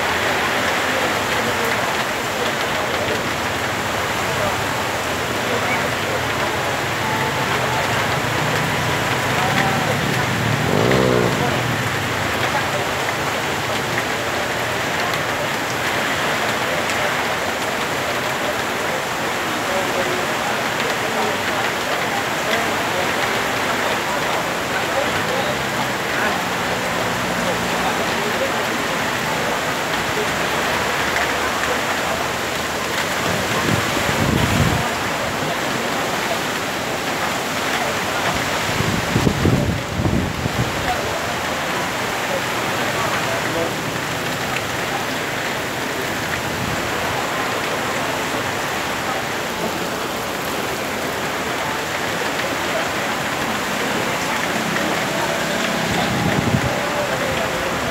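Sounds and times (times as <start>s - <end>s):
rain falling: 0.0s - 57.9s
wind gusts buffeting microphone: 55.9s - 56.8s.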